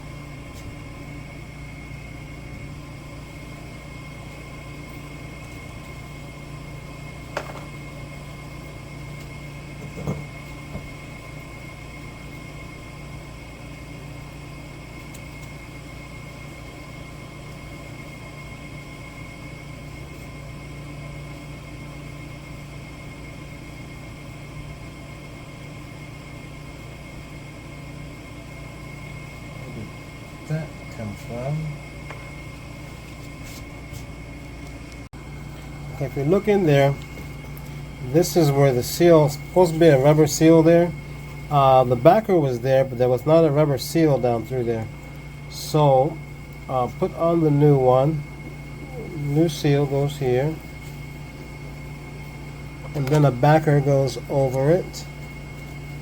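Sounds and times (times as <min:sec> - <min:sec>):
mechanical hum: 0:00.0 - 0:56.0
high whine: 0:29.0 - 0:56.0.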